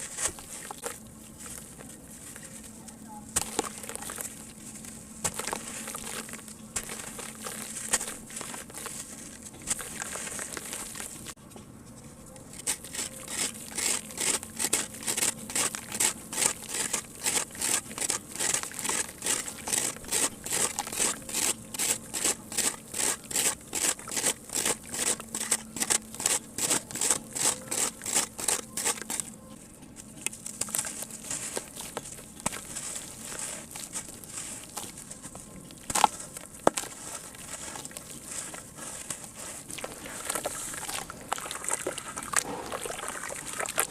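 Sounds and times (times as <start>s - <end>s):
cement crunching in water: 5.2s - 11.4s, 30.5s - 43.9s.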